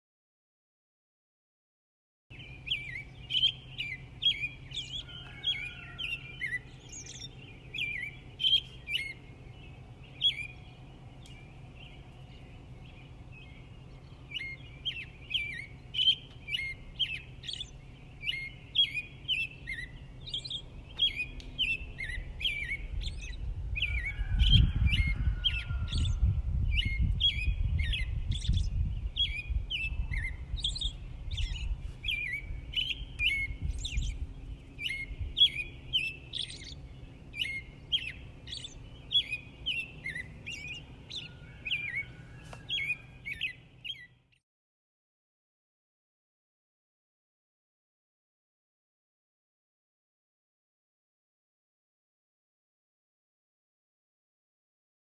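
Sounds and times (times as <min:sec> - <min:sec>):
small birds chirping: 0:02.3 - 0:44.4.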